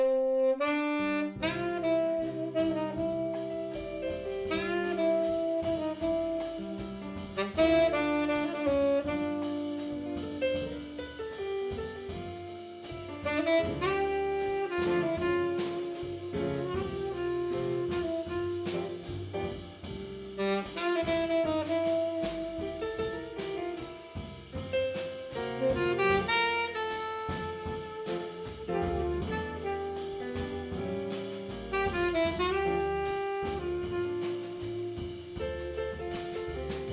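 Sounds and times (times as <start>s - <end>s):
saxophone melody: 0.0s - 3.9s, 4.5s - 6.7s, 7.4s - 10.1s, 13.3s - 19.0s, 20.4s - 22.6s, 25.6s - 30.7s, 31.7s - 35.6s
bass: 0.0s - 36.9s
drums: 0.5s - 36.9s.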